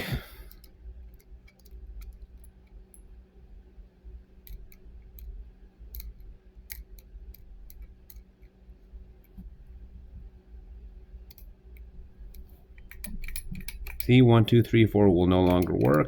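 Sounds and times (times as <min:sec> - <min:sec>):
plastic number wheels clicking: 0:12.9 - 0:16.0.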